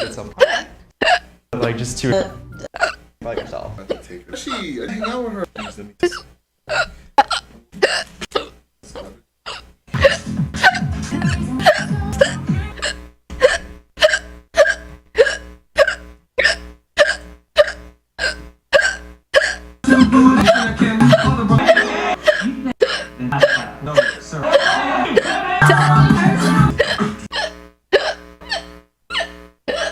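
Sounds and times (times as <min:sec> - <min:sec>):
person hiccuping: 0:00.4 - 0:01.3, 0:02.7 - 0:04.2, 0:05.6 - 0:10.8, 0:11.6 - 0:21.7, 0:26.7 - 0:29.9
background music: 0:01.6 - 0:02.7, 0:10.0 - 0:12.8, 0:19.8 - 0:27.3.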